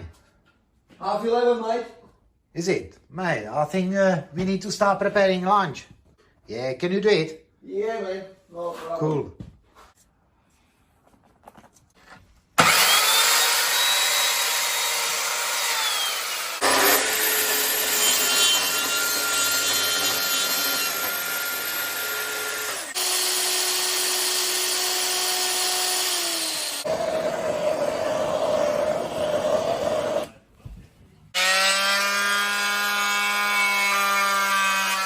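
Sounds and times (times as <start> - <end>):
power tool motor whine: 12.6 - 30.3.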